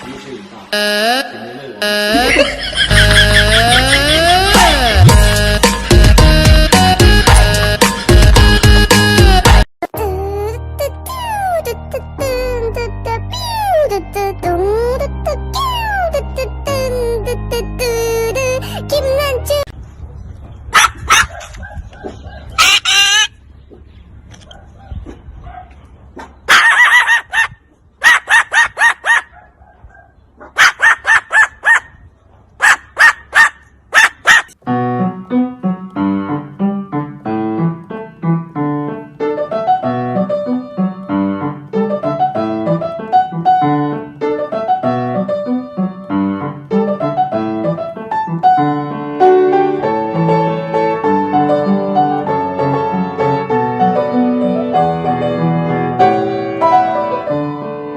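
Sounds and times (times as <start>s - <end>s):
piano music: 0.7s - 19.7s, 34.6s - 57.9s
animal yapping calls: 20.7s - 23.4s, 24.5s - 32.0s, 32.6s - 34.6s.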